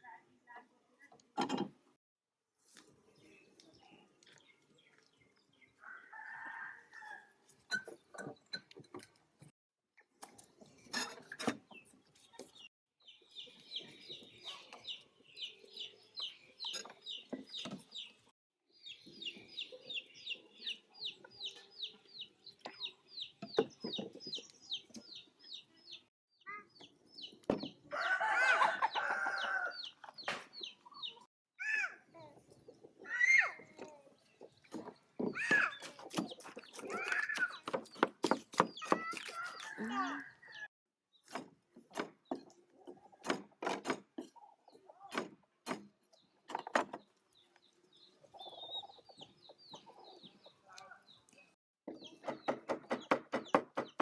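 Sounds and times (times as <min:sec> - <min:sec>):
rooster crowing: 0:27.9 - 0:29.7.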